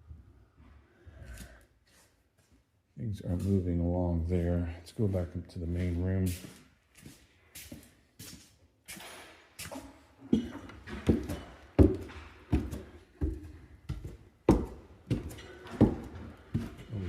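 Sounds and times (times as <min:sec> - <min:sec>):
footsteps climbing stairs: 0:08.9 - 0:17.0.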